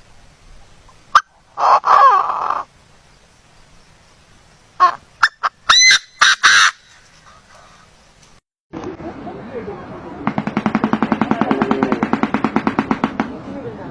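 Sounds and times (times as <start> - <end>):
bird calling loudly: 0.9 - 2.8, 4.8 - 8.0.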